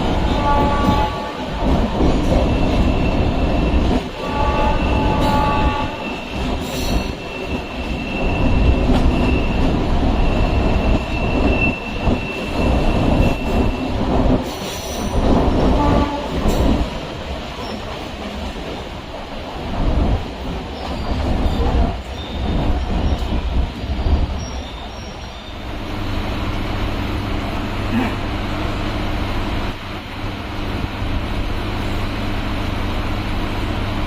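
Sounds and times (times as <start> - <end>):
train rumbling and rattling: 0.0 - 34.0
high wheel squeal: 2.4 - 3.9, 4.6 - 13.9, 20.8 - 25.7.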